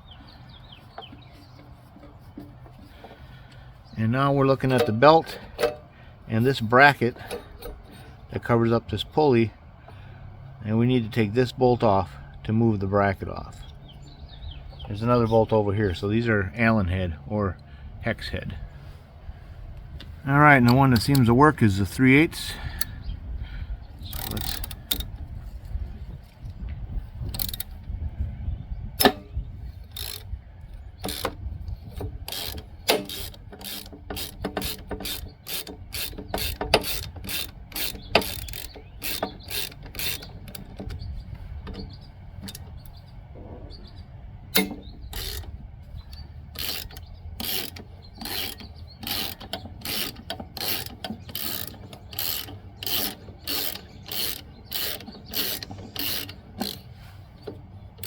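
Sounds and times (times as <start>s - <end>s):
socket ratchet clicking: 4.6s - 5.9s, 24.0s - 25.2s, 27.2s - 27.8s, 29.0s - 30.4s, 31.0s - 43.0s, 44.5s - 58.0s.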